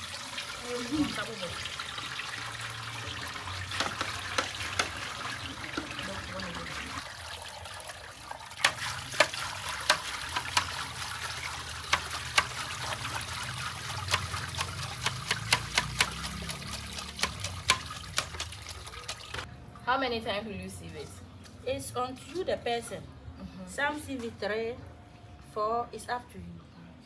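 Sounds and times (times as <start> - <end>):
liquid trickling and splashing: 0.0 - 19.5
sharp clicks and knocks: 14.1 - 19.5.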